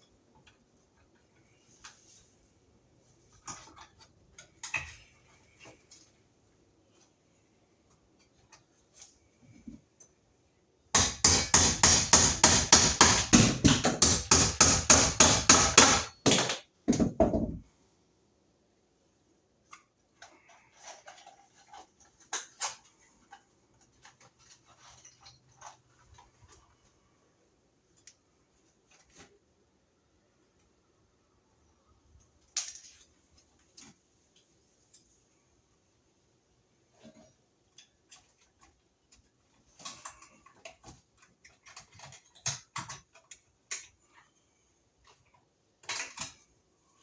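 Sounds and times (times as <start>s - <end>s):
faint knocks and handling: 19.6s - 27.2s.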